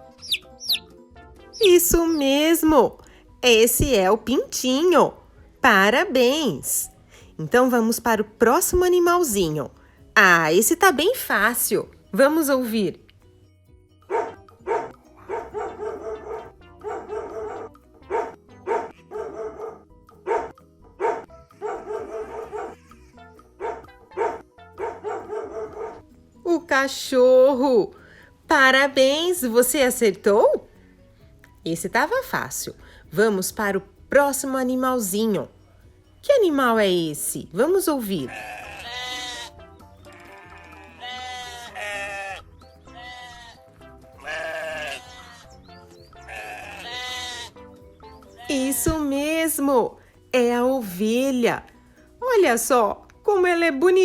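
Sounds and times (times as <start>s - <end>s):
soft background music: 0.0s - 54.0s
dog barking: 14.1s - 22.9s, 23.6s - 26.0s
sheep bleating: 38.2s - 45.6s, 46.2s - 47.6s.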